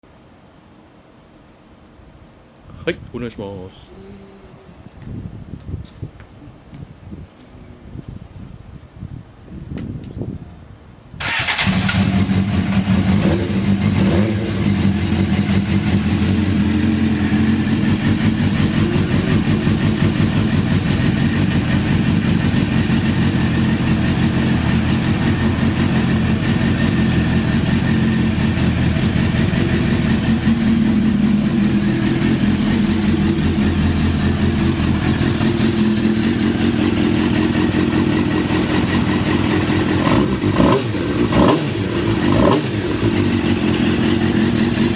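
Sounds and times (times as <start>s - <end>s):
motorcycle engine starting and idling: 11.2s - 44.9s.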